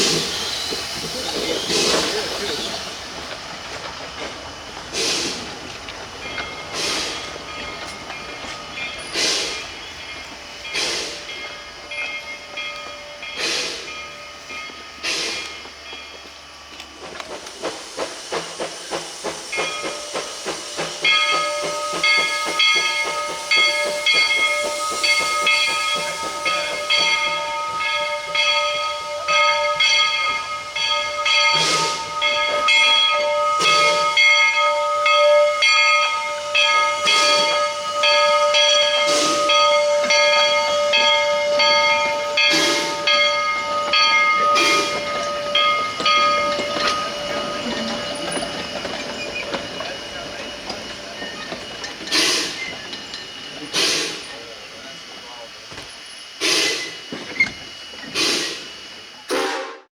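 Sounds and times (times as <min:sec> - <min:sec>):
steam locomotive chuffing: 0:00.0 - 0:59.9
high multi-tone squeal: 0:19.5 - 0:53.7.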